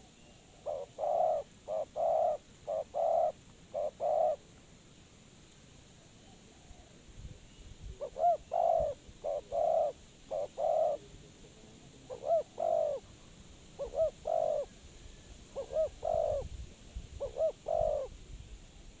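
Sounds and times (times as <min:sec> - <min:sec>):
dove cooing: 0:00.0 - 0:04.5, 0:07.9 - 0:11.1, 0:11.9 - 0:13.1, 0:13.8 - 0:14.8, 0:15.5 - 0:16.5, 0:17.1 - 0:18.2.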